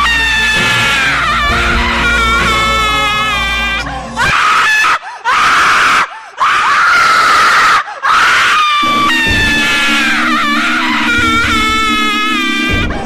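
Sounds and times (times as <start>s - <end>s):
eerie held tone: 0.0s - 4.3s, 8.8s - 13.0s
low drone: 0.0s - 4.3s, 8.8s - 13.0s
shrill high-pitched screams: 0.0s - 13.0s.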